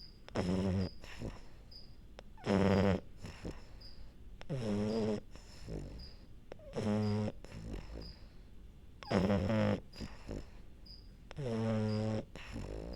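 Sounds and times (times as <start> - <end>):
dog snoring: 0.3 - 1.7, 2.4 - 3.8, 4.4 - 8.4, 9.0 - 10.6, 11.3 - 12.9.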